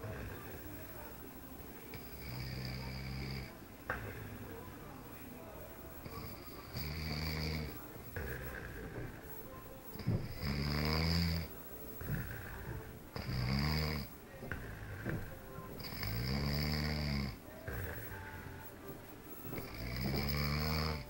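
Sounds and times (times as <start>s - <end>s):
quiet breathing: 0.0s - 21.0s
person snoring loudly: 2.0s - 4.3s, 6.1s - 9.2s, 10.0s - 18.6s, 19.5s - 21.0s.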